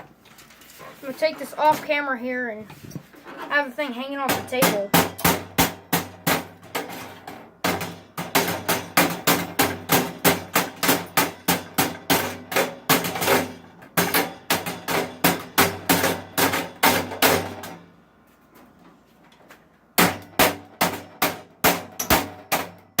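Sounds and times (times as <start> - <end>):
hammer on metal: 4.3 - 6.6, 7.6 - 17.7, 20.0 - 23.0.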